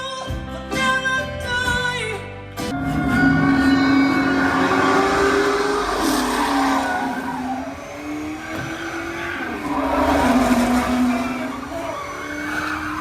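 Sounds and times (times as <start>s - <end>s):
car engines revving: 2.8s - 13.0s.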